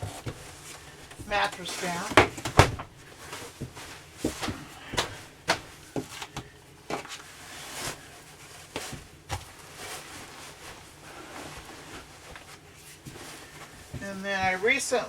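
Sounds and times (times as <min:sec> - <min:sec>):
mattress rustling: 0:00.0 - 0:15.0
sofa frame knocks and clunks: 0:02.1 - 0:06.1.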